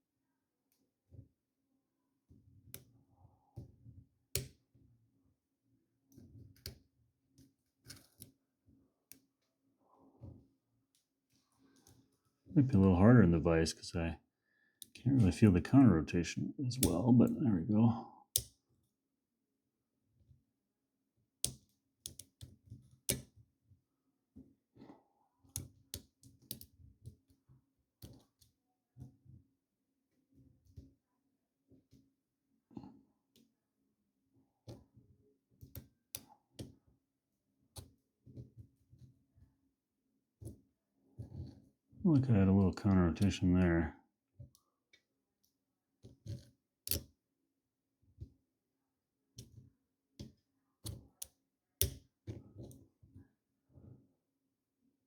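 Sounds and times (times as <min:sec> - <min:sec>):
lock pick clicking in padlock: 0:46.9 - 0:47.1.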